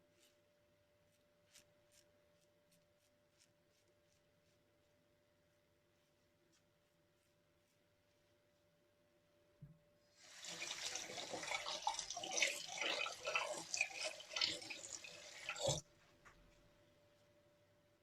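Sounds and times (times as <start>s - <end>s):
tap water splashing into sink: 10.3s - 16.4s.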